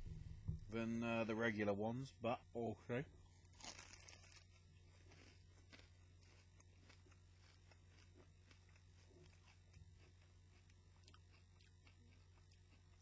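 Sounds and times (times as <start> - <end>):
low steady hum: 0.0 - 13.0
quiet chewing with crackles: 3.2 - 13.0
crunch of biting pastry: 3.4 - 13.0.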